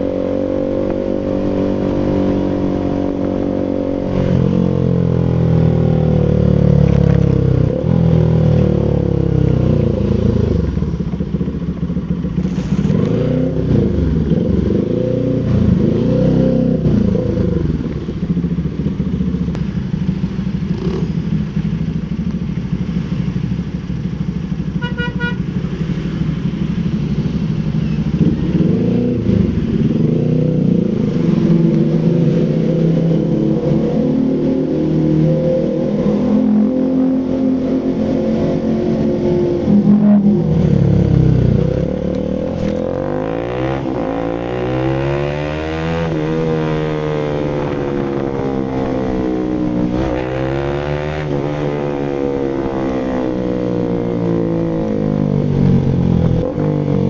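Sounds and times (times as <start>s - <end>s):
motorcycle engine running: 1.1s - 15.8s, 16.8s - 34.3s, 38.1s - 44.7s.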